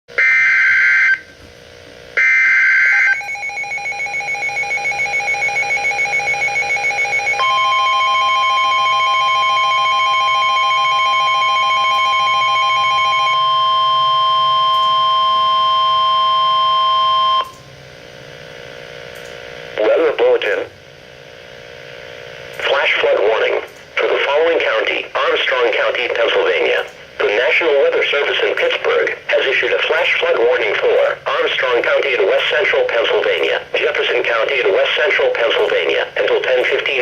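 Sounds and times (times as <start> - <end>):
steady warning alarm tone: 0.1 - 1.3, 2.2 - 17.6
digital header tones: 2.2 - 17.6
rapidly pulsing beep: 2.3 - 17.5
radio hiss: 19.7 - 20.8, 22.6 - 37.0.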